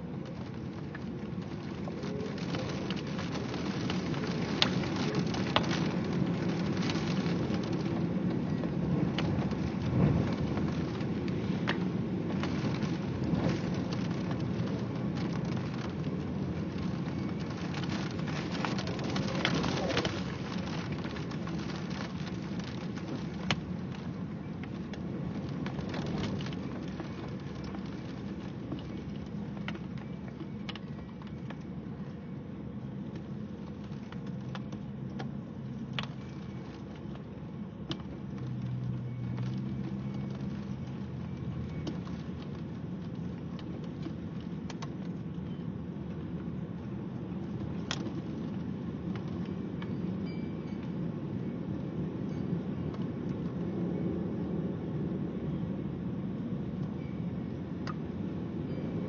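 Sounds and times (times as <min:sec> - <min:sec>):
rain falling steadily: 0:00.0 - 0:59.0
sharp raindrop strikes: 0:00.1 - 0:32.2.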